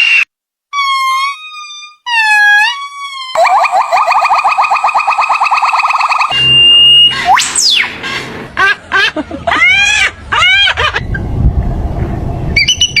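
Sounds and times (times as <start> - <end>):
low rumble: 11.2 - 12.6.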